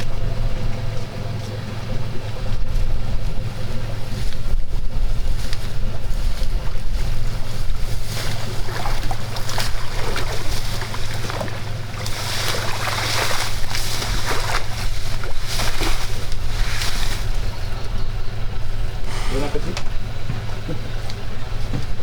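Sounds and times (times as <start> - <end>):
boat engine idling: 0.0 - 22.0
water splashing and sloshing: 5.3 - 19.0.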